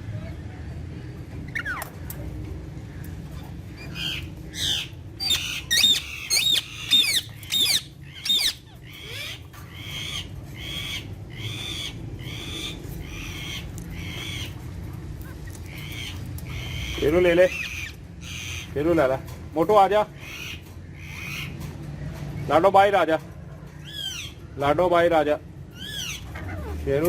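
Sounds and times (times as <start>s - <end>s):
parakeets screeching: 1.4s - 2.1s, 2.8s - 21.7s, 23.7s - 27.0s
soft parakeet calls: 2.9s - 14.6s, 15.2s - 18.8s.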